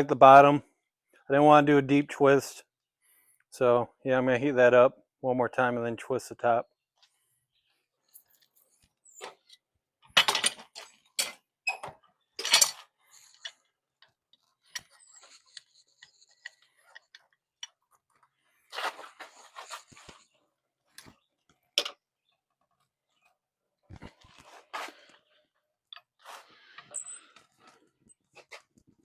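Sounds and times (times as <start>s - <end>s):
metal tools clanking and scraping: 10.2s - 13.7s.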